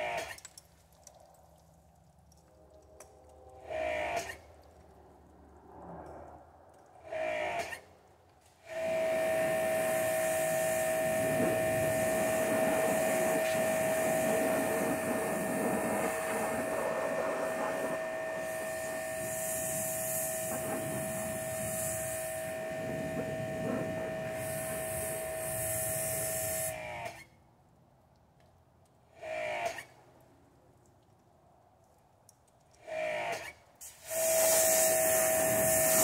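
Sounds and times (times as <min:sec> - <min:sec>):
machine motor whining: 0:08.7 - 0:27.2, 0:34.0 - 0:36.0
rushing hiss: 0:33.8 - 0:36.0.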